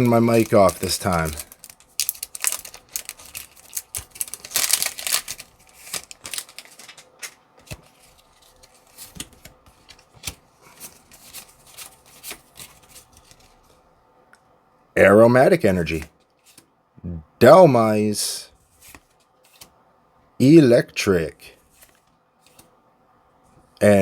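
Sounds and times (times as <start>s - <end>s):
foil pack tearing and crinkling: 0.0s - 7.4s.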